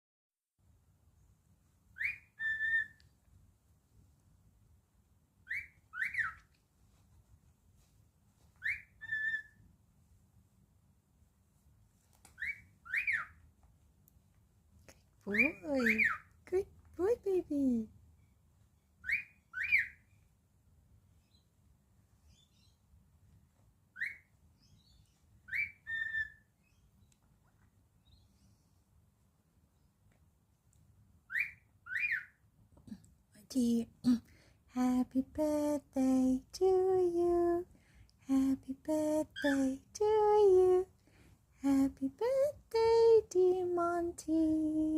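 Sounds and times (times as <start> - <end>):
cockatiel whistling: 2.0 - 3.0, 5.5 - 6.4, 8.6 - 9.6, 12.4 - 13.4, 19.0 - 20.0, 24.0 - 24.3, 25.5 - 26.5, 31.3 - 32.4
faint soft chirps: 22.2 - 22.8.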